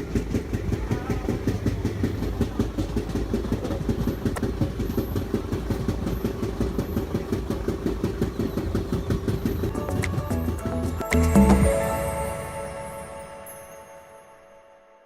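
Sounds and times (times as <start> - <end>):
train wheels knocking on rails: 0.0 - 10.7
diesel locomotive droning: 0.0 - 14.4.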